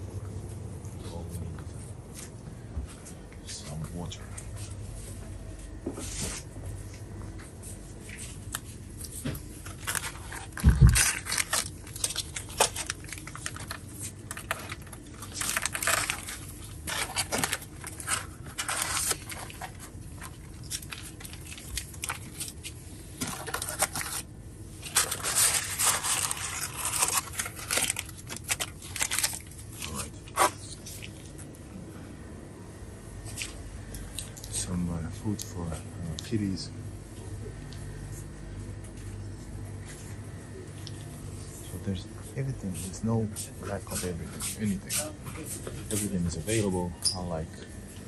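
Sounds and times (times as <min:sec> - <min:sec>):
rustling and crinkling: 0:00.2 - 0:31.6.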